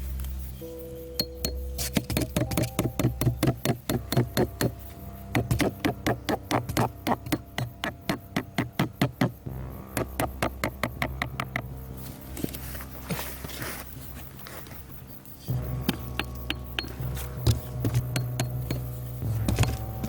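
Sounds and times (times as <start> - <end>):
rapid knocking on wood: 1.2 - 11.7, 15.8 - 20.0.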